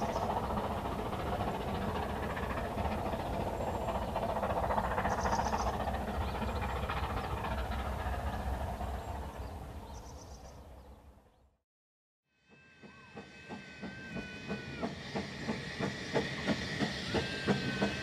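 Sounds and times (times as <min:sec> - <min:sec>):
steam train rumbling: 0:00.0 - 0:11.1, 0:12.4 - 0:18.0.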